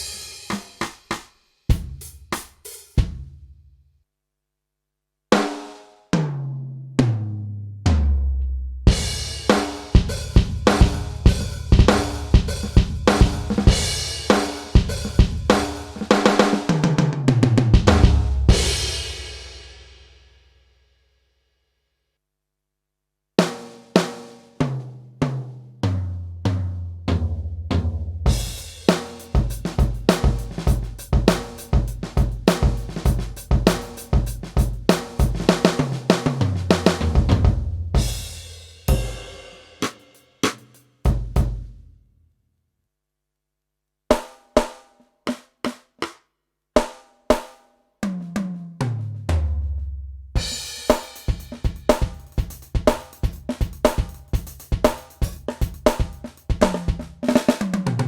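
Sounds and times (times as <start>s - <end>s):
electronic drum kit: 0.0s - 3.3s, 8.9s - 19.3s, 28.3s - 41.7s, 50.4s - 58.0s
tom fill: 28.2s - 41.8s.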